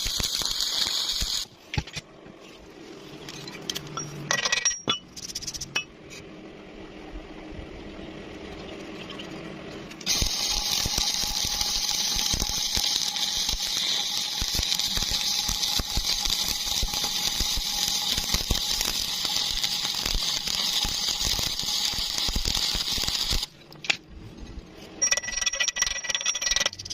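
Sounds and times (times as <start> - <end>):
arc welding crackling sizzle: 0.0 - 1.7, 10.0 - 23.6.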